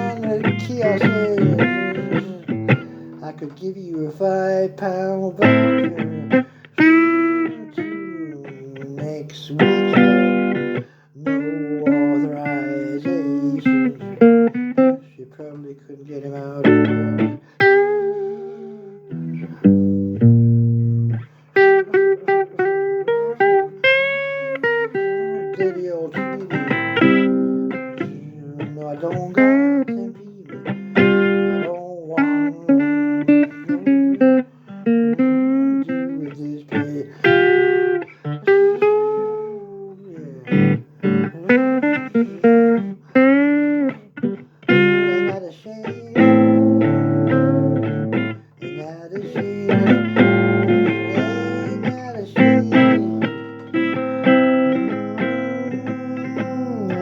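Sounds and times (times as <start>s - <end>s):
blues guitar: 0.0s - 57.0s.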